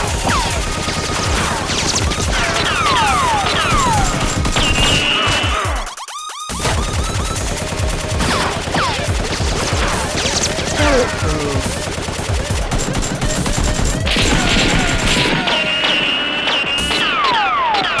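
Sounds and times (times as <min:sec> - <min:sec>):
automatic gunfire: 0:06.7 - 0:17.9.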